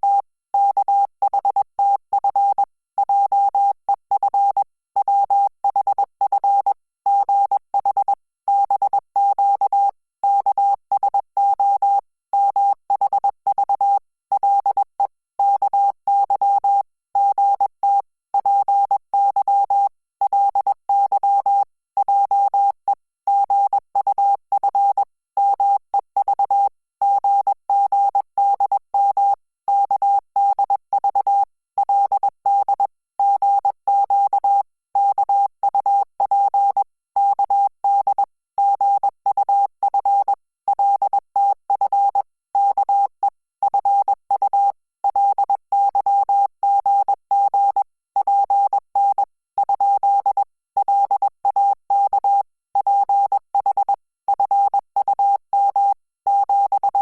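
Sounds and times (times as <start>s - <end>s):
morse code beeps: 38.1s - 57.0s.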